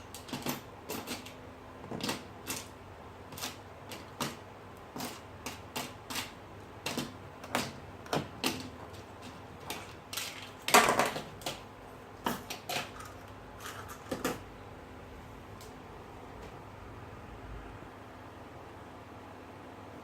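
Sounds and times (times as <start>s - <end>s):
small tools clicking and tapping: 0.0s - 11.6s, 12.2s - 14.4s.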